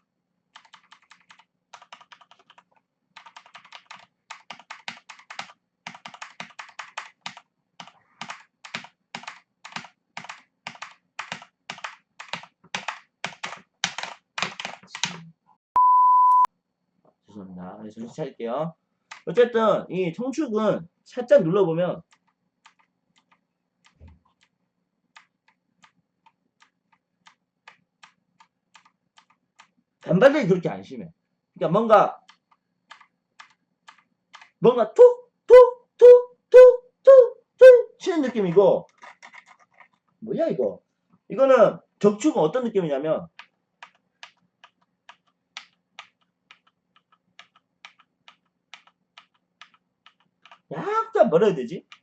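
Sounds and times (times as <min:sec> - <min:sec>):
mechanical keyboard keystrokes: 0:03.2 - 0:15.1, 0:32.3 - 0:34.5, 0:38.9 - 0:39.9, 0:43.4 - 0:50.7.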